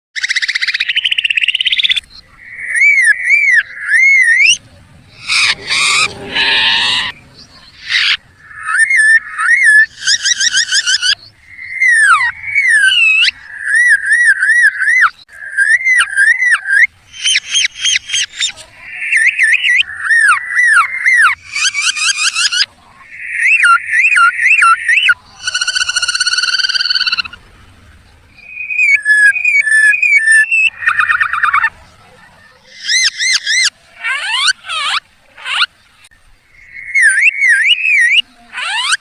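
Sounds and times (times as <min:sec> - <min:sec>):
harsh raspy bird call: 0:00.2 - 0:27.4, 0:32.6 - 0:35.7, 0:36.5 - 0:39.0
person imitating bird calls: 0:05.2 - 0:07.1.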